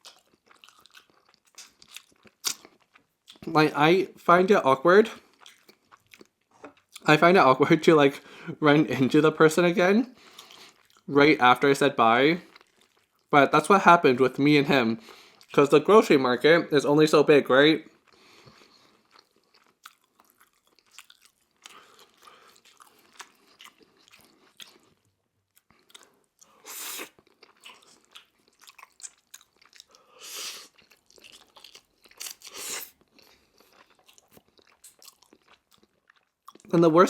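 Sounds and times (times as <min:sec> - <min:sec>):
person chewing crunchy food: 0:00.0 - 0:03.5, 0:05.1 - 0:07.1, 0:10.2 - 0:11.1, 0:12.4 - 0:13.3, 0:15.0 - 0:15.5, 0:17.9 - 0:36.8.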